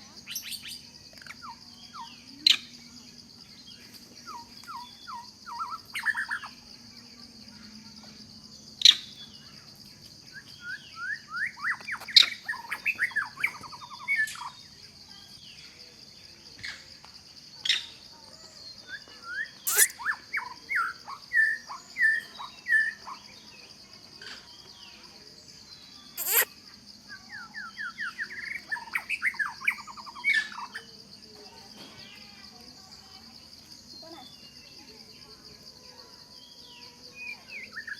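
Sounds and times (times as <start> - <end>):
high insect drone: 0.0 - 37.9
birds chirping: 19.5 - 23.4, 26.0 - 26.9.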